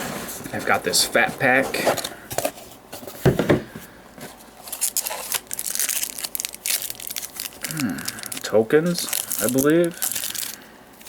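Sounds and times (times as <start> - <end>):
plastic wrapping crinkling: 4.6 - 11.0.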